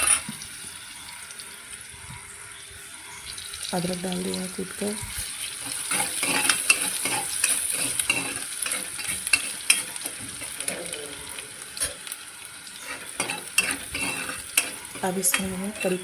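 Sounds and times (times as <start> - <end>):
spices sizzling in a pan: 0.0 - 16.0
spoon scraping a pan: 5.4 - 10.9, 12.8 - 16.0.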